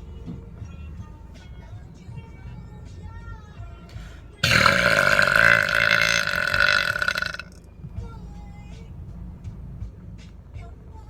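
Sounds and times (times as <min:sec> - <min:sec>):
long loud belch: 0:04.4 - 0:07.6.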